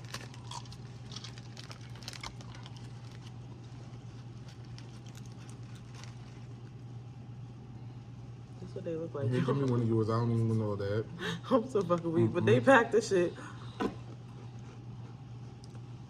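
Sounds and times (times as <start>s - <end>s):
snack packet crinkling: 0.0s - 6.8s
steady low hum: 0.0s - 16.0s.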